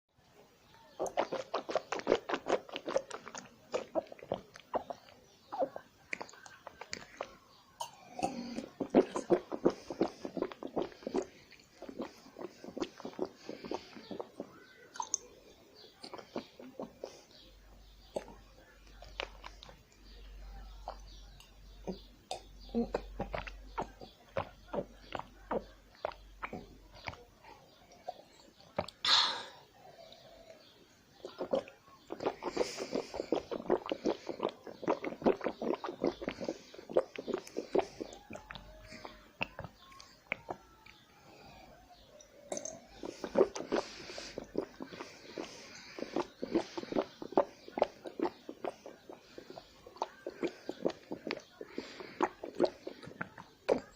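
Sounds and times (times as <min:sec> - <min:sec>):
wet mouth clicks and smacks: 0:01.0 - 0:05.2, 0:06.1 - 0:07.4, 0:08.8 - 0:15.3, 0:16.0 - 0:17.2, 0:19.0 - 0:19.8, 0:20.8 - 0:27.2, 0:31.2 - 0:38.7, 0:39.4 - 0:41.0, 0:42.5 - 0:51.5, 0:52.2 - 0:53.8
mouth water pops: 0:42.5 - 0:53.8.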